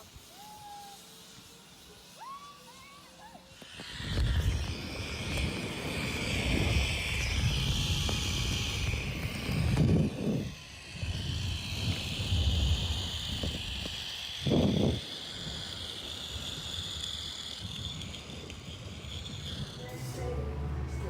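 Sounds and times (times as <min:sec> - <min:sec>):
wind buffeting microphone: 0:03.8 - 0:21.0
high-pitched drone: 0:19.8 - 0:21.0.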